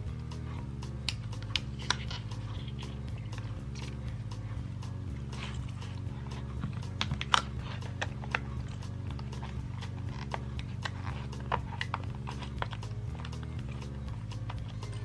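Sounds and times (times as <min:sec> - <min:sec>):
low bass line music: 0:00.0 - 0:15.0.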